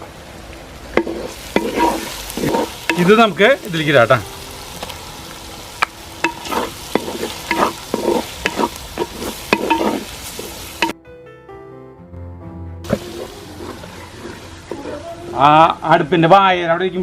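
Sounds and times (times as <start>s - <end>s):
onions sizzling in oil: 0.0s - 11.0s, 12.8s - 16.7s
spoon scraping pot: 1.0s - 3.2s, 6.2s - 10.9s, 12.9s - 15.4s
music: 3.8s - 10.0s, 10.7s - 15.5s.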